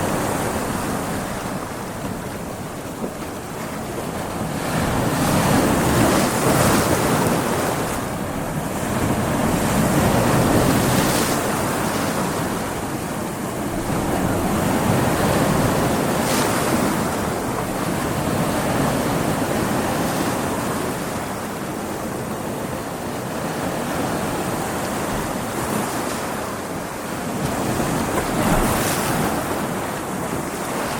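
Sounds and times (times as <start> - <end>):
waves surging and breaking: 0.0 - 30.9
wind: 0.0 - 30.9.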